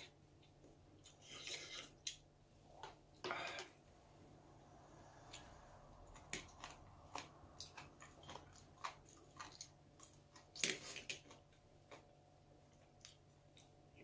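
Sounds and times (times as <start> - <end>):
person chewing: 5.1 - 14.0.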